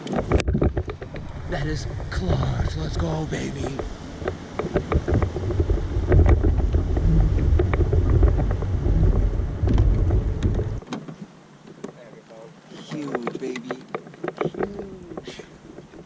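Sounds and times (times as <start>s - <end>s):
wind buffeting microphone: 0.0s - 10.8s
knocks and clicks in boat: 0.0s - 12.2s, 12.8s - 16.0s.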